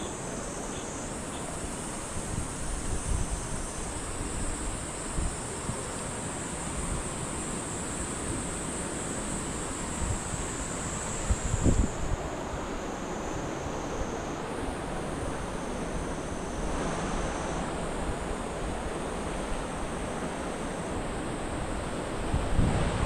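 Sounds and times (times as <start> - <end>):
wind thumps on microphone: 22.3 - 23.0.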